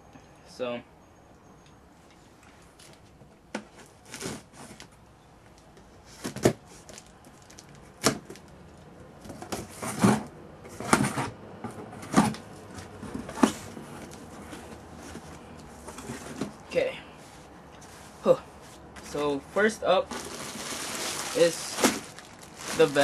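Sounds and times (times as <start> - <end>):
package being opened by hand: 20.1 - 23.0.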